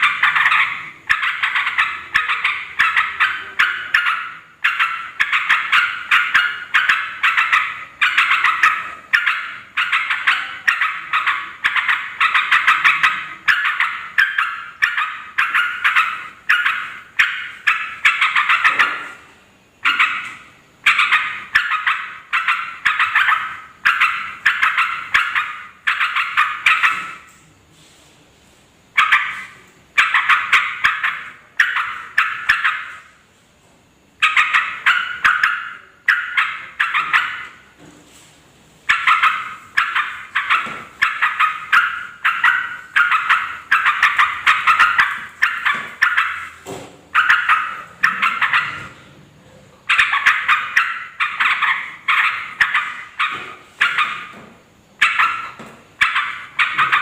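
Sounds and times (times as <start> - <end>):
bulbuls chattering: 38.9 - 54.4.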